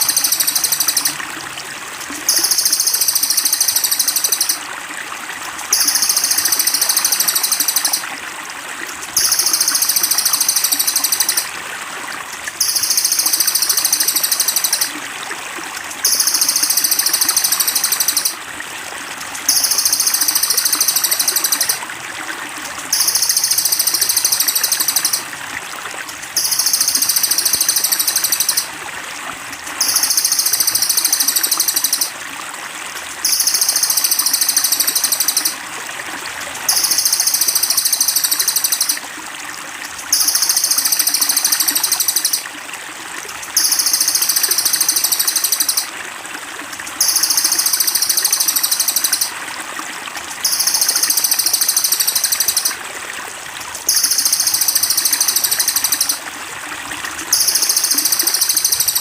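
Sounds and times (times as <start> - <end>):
running water trickle: 0.0 - 59.0
songbird trill: 5.8 - 8.0.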